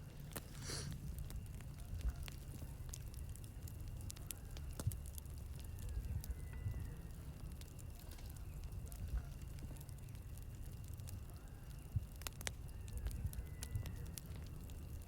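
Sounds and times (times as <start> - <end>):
campfire crackling and popping: 0.0 - 15.0.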